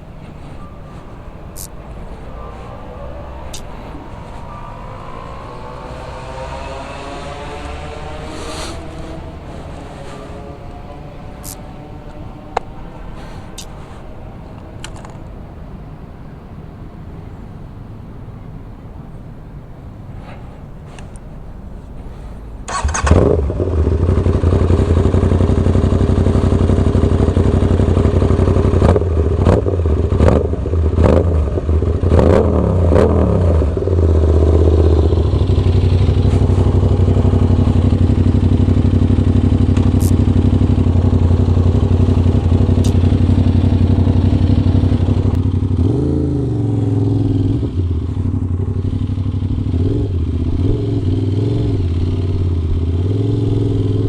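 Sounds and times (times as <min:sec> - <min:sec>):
motorcycle throttle revs: 0:00.0 - 0:12.6, 0:22.6 - 0:54.0
motorcycle engine idling: 0:22.4 - 0:31.0, 0:33.6 - 0:53.0.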